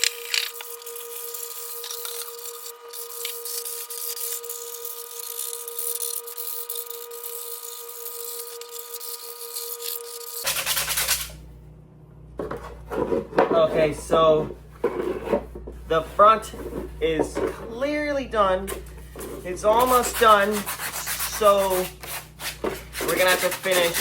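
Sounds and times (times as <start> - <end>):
sandpaper scratching plastic: 0.0 - 11.4, 18.7 - 24.0
background hum: 0.0 - 24.0.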